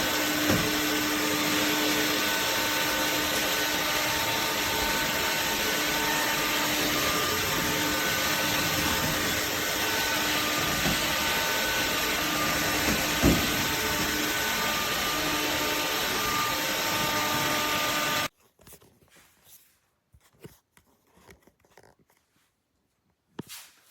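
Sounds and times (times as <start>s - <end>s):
stick vacuum running: 0.0s - 18.3s.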